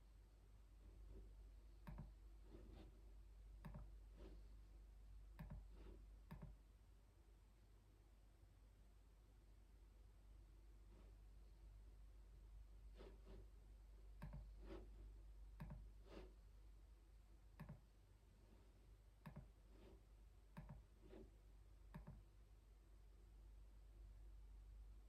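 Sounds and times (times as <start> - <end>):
keyboard typing: 1.8 - 2.1, 5.4 - 5.7.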